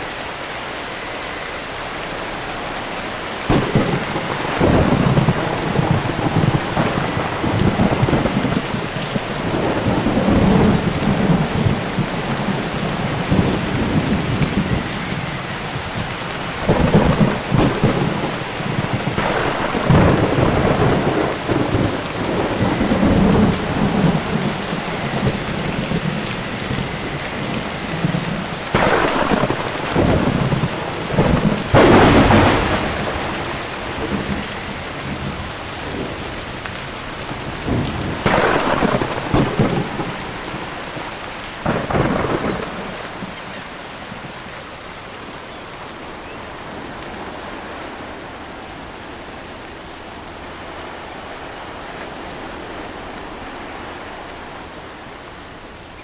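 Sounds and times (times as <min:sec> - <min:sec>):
rain-like hiss: 0:00.0 - 0:56.0
volcano rumbling: 0:03.4 - 0:43.7
volcanic booms: 0:03.5 - 0:12.3, 0:16.5 - 0:26.2, 0:27.9 - 0:36.1, 0:37.3 - 0:43.4
sharp volcanic blasts: 0:03.5 - 0:36.1, 0:37.3 - 0:43.6.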